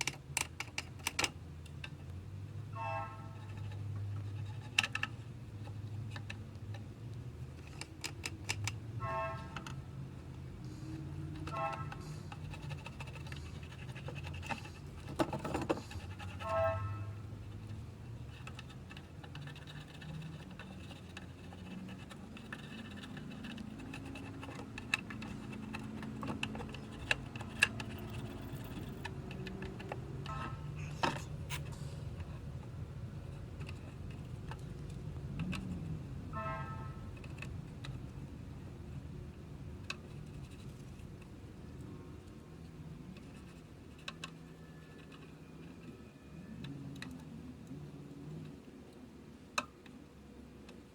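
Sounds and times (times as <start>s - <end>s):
tools clicking and tapping: 0.0s - 2.2s, 3.3s - 38.4s
steady low hum: 1.3s - 44.2s.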